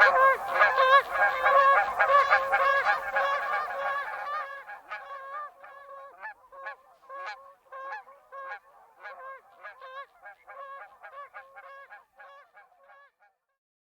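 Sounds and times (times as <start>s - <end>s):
geese honking: 0.0s - 13.1s.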